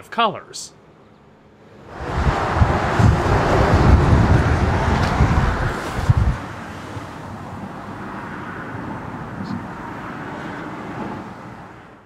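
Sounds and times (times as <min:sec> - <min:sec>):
car road and wind noise: 0:01.2 - 0:12.0
low rumbling: 0:01.8 - 0:06.6.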